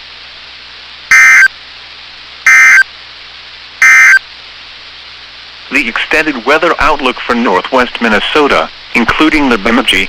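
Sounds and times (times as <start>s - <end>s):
digital data tone bursts: 1.1s - 1.5s, 2.5s - 2.9s, 3.8s - 4.2s
radio hiss: 4.8s - 10.0s.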